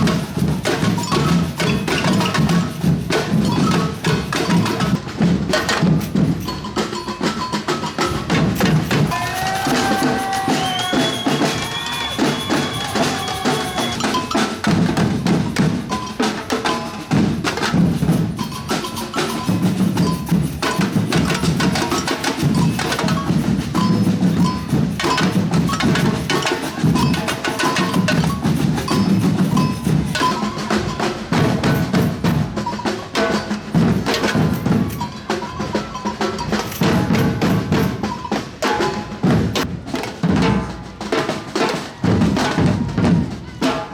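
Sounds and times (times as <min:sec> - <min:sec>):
samba drum ensemble: 0:00.0 - 0:43.9
held high tone: 0:09.0 - 0:14.6.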